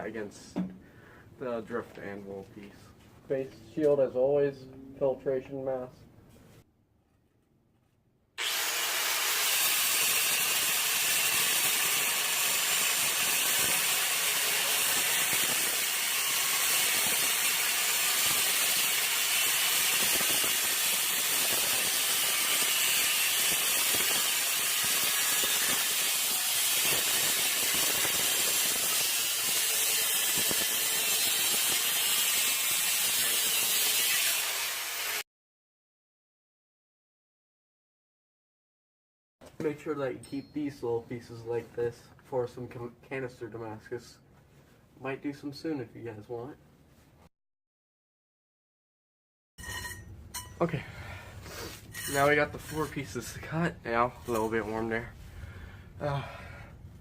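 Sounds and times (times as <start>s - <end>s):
power tool cutting steel: 8.4s - 35.2s.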